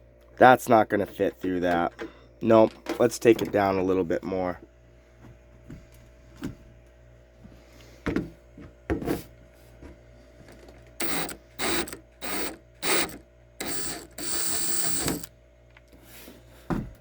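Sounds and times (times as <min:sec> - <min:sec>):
power drill running in bursts: 0:11.0 - 0:15.3.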